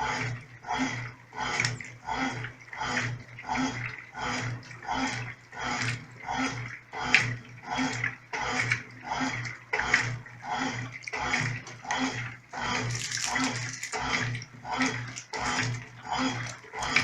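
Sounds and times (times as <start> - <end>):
low motor hum: 0.0 - 17.0
washing machine water sloshing: 0.0 - 17.0.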